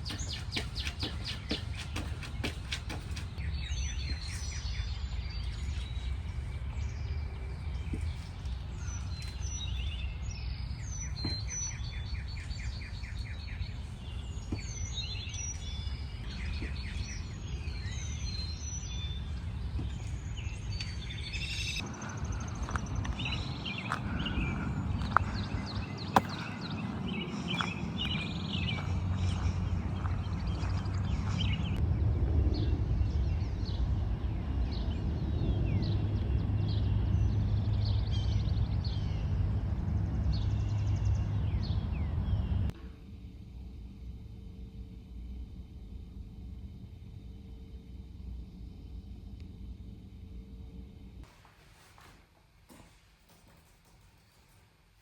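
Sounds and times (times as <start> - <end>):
small birds chirping: 0.0 - 31.8
low background rumble: 3.0 - 51.3.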